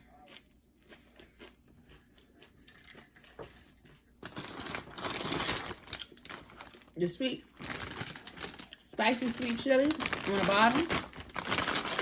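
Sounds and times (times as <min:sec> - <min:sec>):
tortilla chips crunching: 0:00.0 - 0:12.0.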